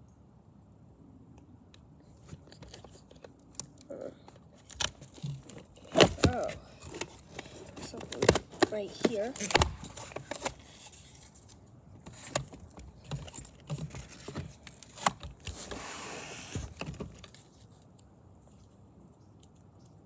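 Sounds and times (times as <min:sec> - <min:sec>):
packaging rustling: 0:04.6 - 0:17.6.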